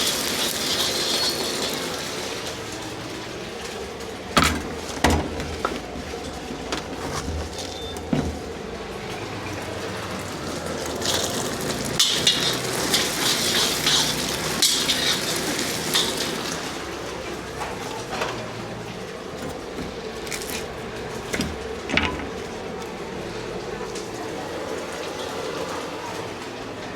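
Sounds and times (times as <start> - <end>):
metal ladle scraping a wok: 0.0 - 2.1, 11.0 - 16.7
food sizzling in a wok: 0.0 - 3.2, 10.4 - 17.2.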